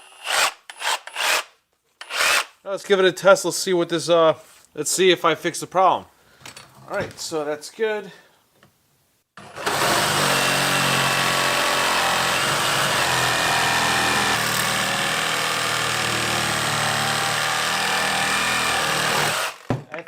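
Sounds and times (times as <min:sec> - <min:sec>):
reciprocating saw running: 0:09.6 - 0:19.7.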